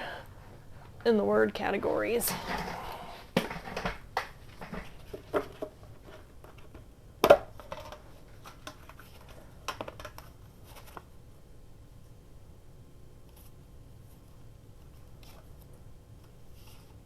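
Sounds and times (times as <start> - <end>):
paper rustling and tapping: 3.4 - 11.1.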